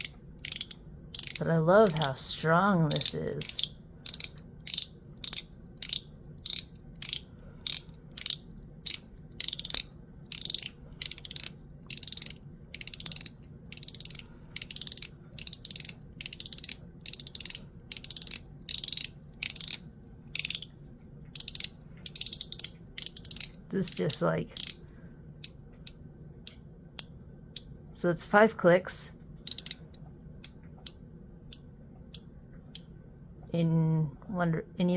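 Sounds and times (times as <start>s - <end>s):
fidget slider clicking: 0.0s - 24.8s, 29.4s - 32.9s.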